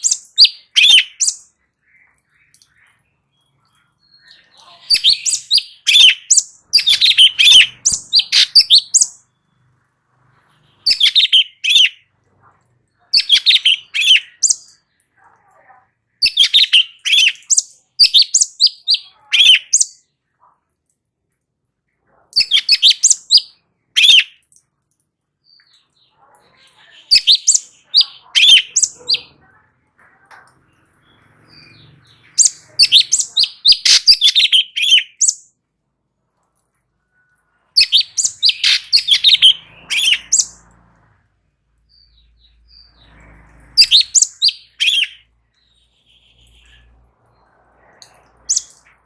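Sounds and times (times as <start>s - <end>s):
bird singing rapid chirps: 0.0s - 9.7s, 10.3s - 12.1s, 13.0s - 14.9s, 16.2s - 20.0s, 22.4s - 24.4s, 25.5s - 29.4s, 30.6s - 35.5s, 37.7s - 40.9s, 41.9s - 49.0s.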